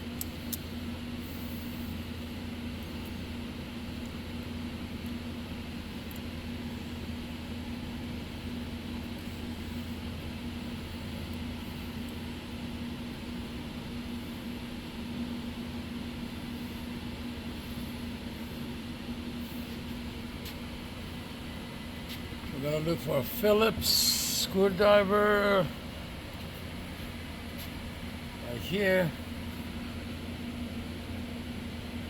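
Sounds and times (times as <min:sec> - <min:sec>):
mechanical hum: 0:00.0 - 0:32.0.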